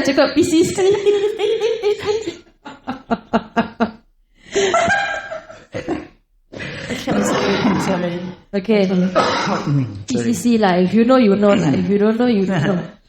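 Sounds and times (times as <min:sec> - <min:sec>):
people laughing: 0:00.4 - 0:06.1.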